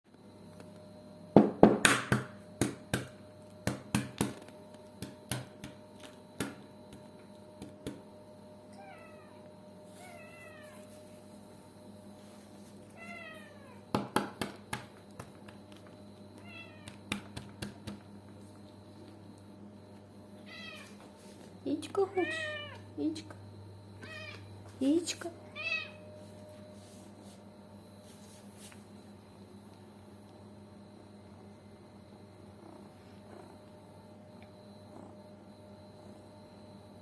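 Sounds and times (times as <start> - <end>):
cat meowing: 8.8 - 9.4, 10.0 - 10.9, 20.5 - 21.0, 22.2 - 22.8, 24.0 - 24.4, 25.5 - 26.0.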